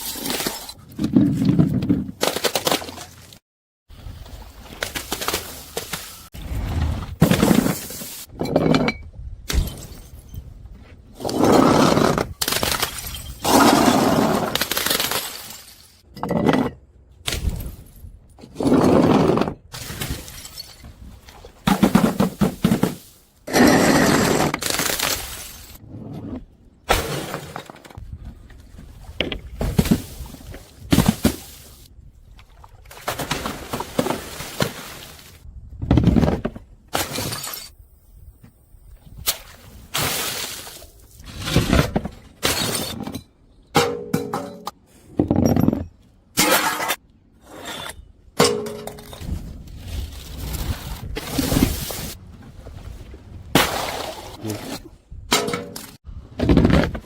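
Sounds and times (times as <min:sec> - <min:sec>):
glass bottles shattering: 0:12.5 - 0:13.9, 0:14.8 - 0:16.5, 0:19.8 - 0:20.9, 0:37.0 - 0:37.8, 0:42.4 - 0:44.7.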